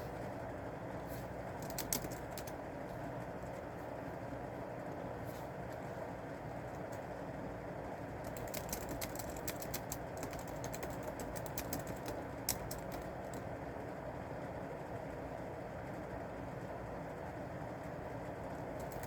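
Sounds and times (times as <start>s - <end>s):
computer keyboard typing: 1.6s - 2.6s, 8.2s - 13.5s, 18.8s - 19.0s.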